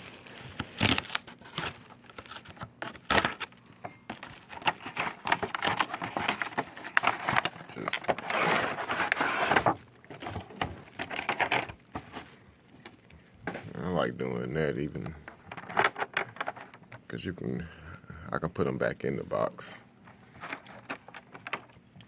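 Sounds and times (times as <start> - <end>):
plastic packaging crinkling: 0.0 - 13.5, 20.1 - 22.0
scraping rustle: 4.6 - 12.4.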